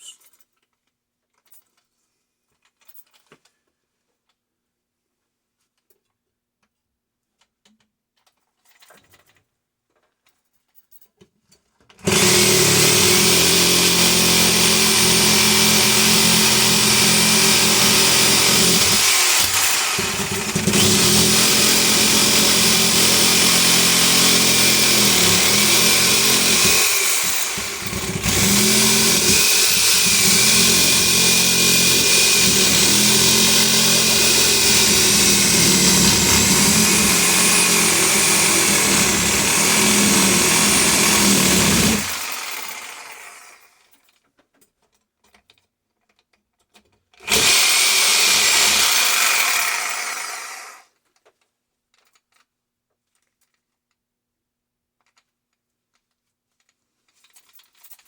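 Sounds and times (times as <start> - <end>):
power tool cutting steel: 12.0 - 43.7, 47.2 - 50.8.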